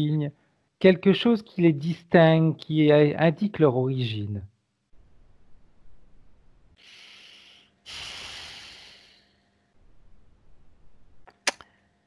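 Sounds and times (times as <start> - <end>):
person breathing: 6.8 - 9.8.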